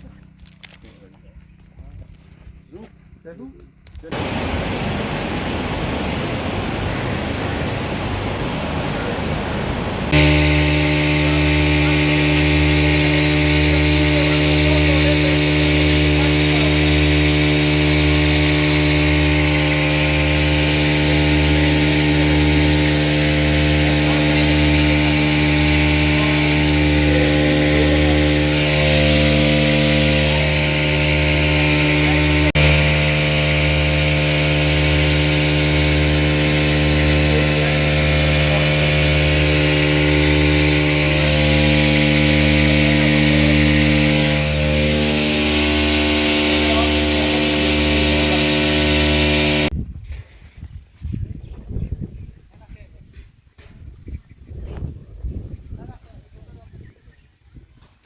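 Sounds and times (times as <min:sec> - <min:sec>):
machine motor humming: 0:04.1 - 0:49.7.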